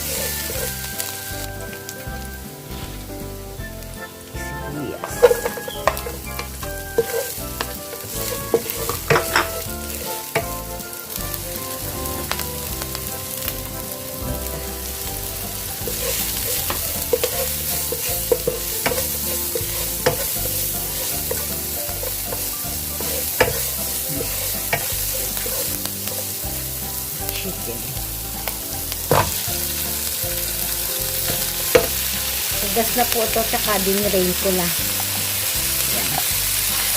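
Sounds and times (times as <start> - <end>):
garlic and onion sizzling in oil: 0.0 - 36.9
utensil clicking against pan: 15.9 - 23.7.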